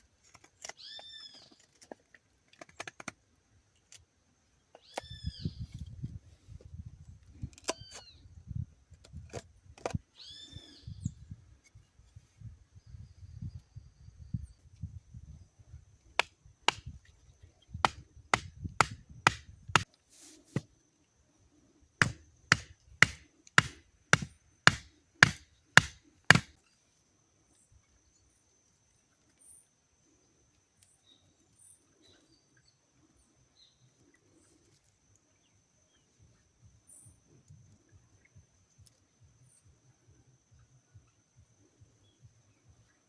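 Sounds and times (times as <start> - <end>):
hatchet chopping wood: 16.2 - 16.9, 17.8 - 19.9, 22.0 - 26.6.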